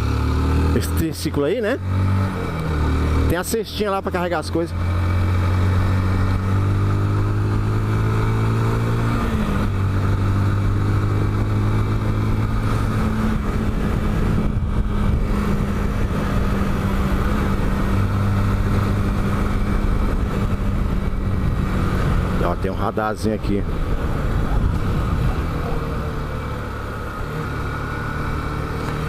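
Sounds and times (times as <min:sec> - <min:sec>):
motorcycle engine running: 0:00.0 - 0:29.0
wind and road noise: 0:00.0 - 0:29.0.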